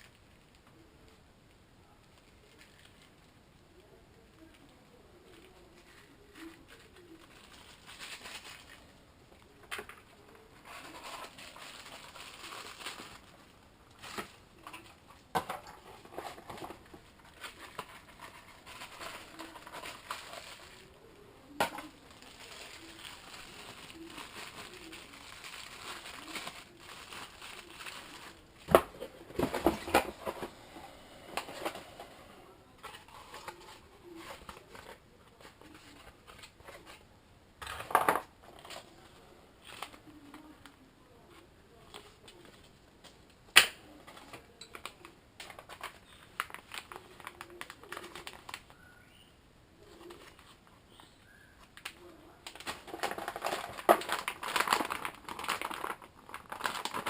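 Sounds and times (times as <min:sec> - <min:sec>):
wrapping rustling: 0:01.9 - 0:32.0, 0:44.1 - 0:48.8, 0:51.7 - 0:57.0
parts clattering: 0:21.5 - 0:32.1, 0:51.8 - 0:57.0.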